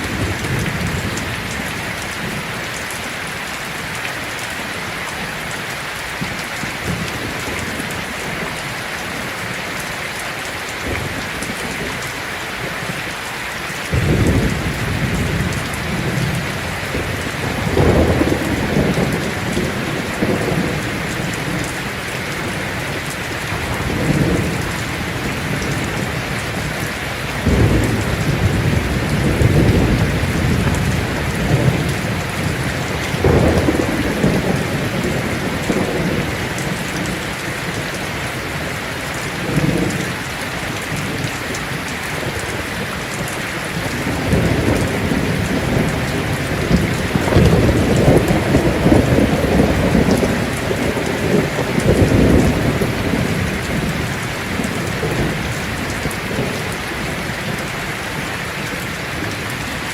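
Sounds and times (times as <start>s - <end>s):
heavy rain on a tin roof: 0.0s - 59.9s
thunder rolling: 13.9s - 22.6s, 23.5s - 37.2s, 43.8s - 57.7s.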